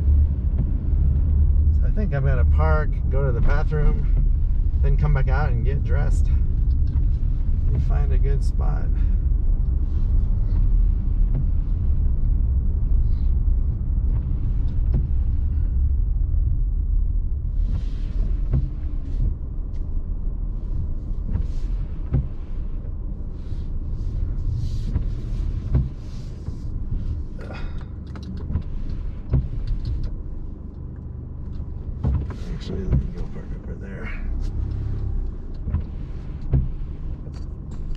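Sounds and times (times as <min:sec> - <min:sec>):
vehicle cabin rumble: 0:00.0 - 0:37.9
faint clicks and knocks: 0:24.8 - 0:33.7.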